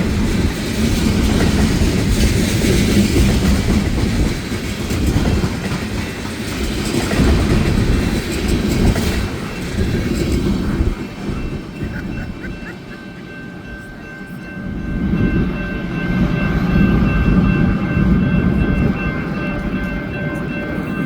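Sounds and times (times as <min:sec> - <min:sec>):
wheels clattering over rail joints: 0:00.0 - 0:12.5
freight train rolling past: 0:00.0 - 0:21.0.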